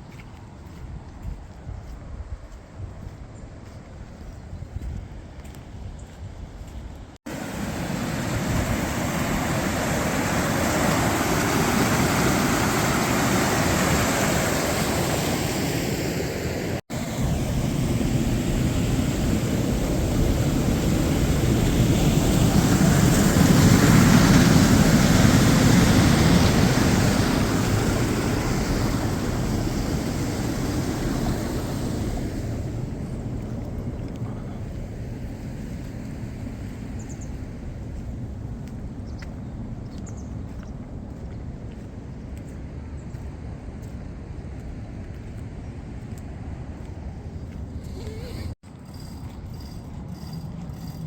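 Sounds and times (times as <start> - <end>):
floodwater rushing: 7.3 - 37.8.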